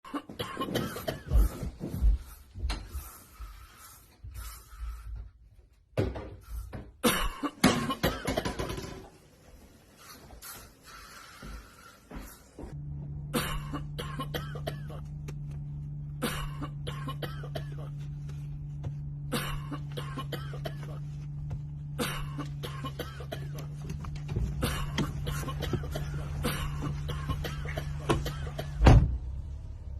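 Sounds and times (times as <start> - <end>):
person coughing: 0.0 - 1.8, 7.0 - 9.0, 13.3 - 15.3, 16.0 - 29.0
steady low hum: 9.4 - 29.9.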